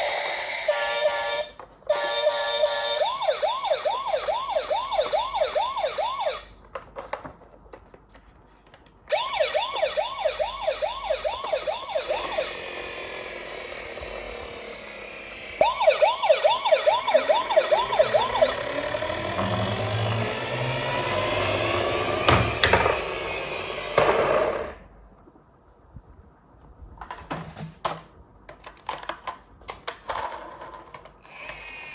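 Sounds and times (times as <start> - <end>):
toy siren wailing: 0.0 - 6.5, 9.1 - 24.0.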